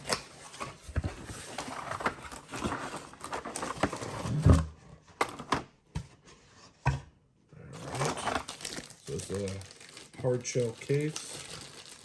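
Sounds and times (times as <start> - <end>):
packaging rustling and knocking: 0.0 - 6.2.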